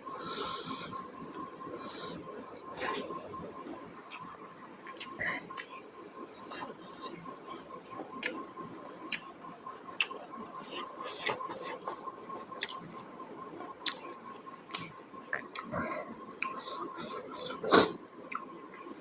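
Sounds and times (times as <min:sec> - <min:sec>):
faint steady tone: 0:00.0 - 0:19.0
person chewing food: 0:12.6 - 0:13.2, 0:13.8 - 0:18.5.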